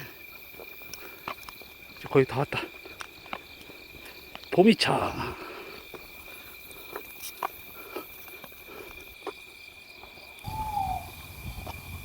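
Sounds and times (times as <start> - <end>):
crickets trilling: 0.0 - 12.0.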